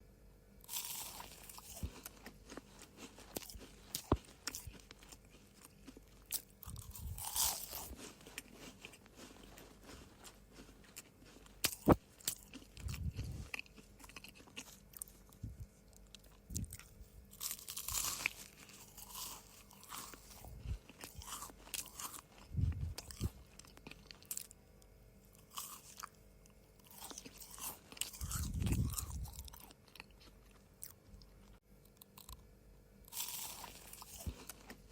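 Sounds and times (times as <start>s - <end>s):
crunching and chewing cookies: 0.1s - 34.9s.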